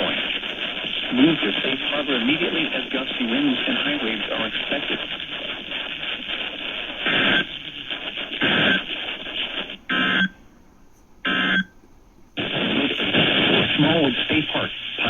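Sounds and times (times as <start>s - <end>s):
radio static hiss: 0.0s - 10.5s, 11.2s - 11.8s, 12.4s - 15.0s
digital data tone bursts: 11.3s - 11.7s.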